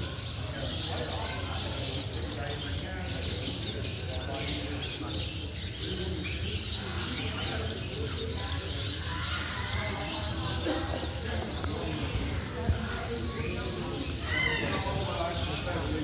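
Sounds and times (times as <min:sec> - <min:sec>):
caged birds chirping: 0:00.0 - 0:16.0
low background murmur: 0:00.0 - 0:16.0.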